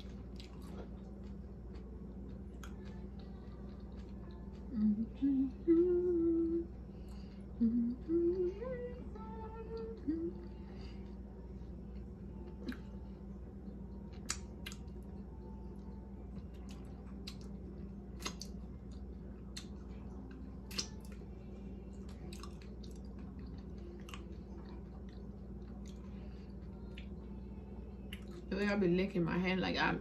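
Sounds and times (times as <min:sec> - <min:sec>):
chewing with wet smacks: 0:00.0 - 0:05.0, 0:11.9 - 0:27.4, 0:28.0 - 0:28.5
low hum: 0:00.0 - 0:30.0.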